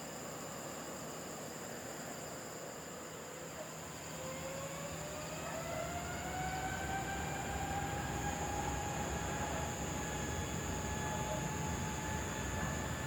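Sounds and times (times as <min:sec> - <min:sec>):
jet engines spooling up: 0:03.8 - 0:13.0.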